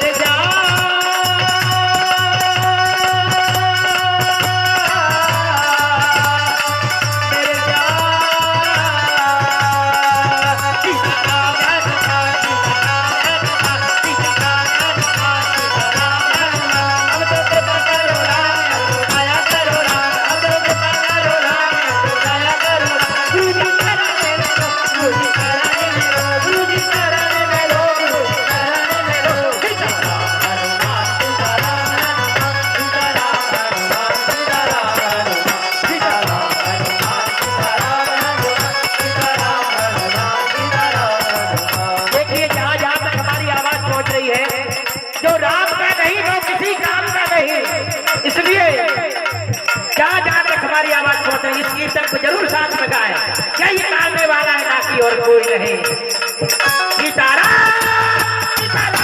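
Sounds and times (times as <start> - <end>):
rattling percussion: 0.0 - 59.0
instrumental melody: 53.4 - 59.0.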